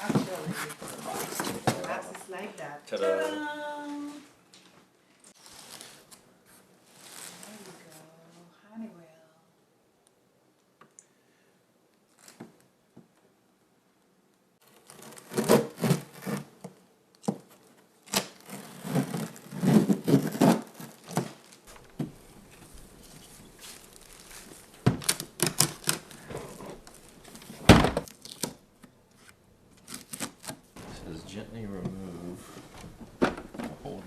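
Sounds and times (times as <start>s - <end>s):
packaging rustling and crinkling: 17.5s - 31.1s
heavy thunk: 27.6s - 28.0s, 30.8s - 33.9s.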